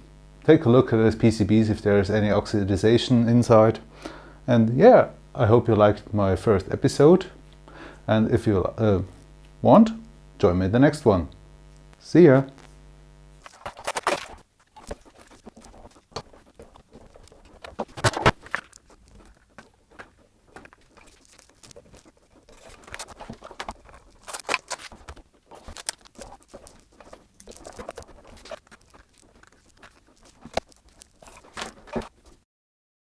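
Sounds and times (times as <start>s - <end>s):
rustling and crunching: 11.3s - 32.4s.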